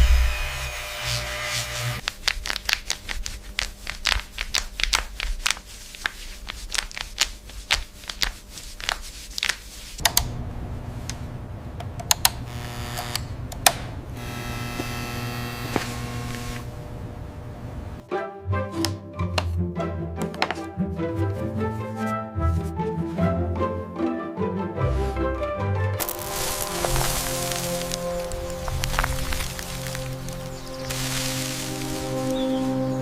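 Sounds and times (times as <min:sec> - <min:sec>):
steady low hum: 0:10.0 - 0:18.0.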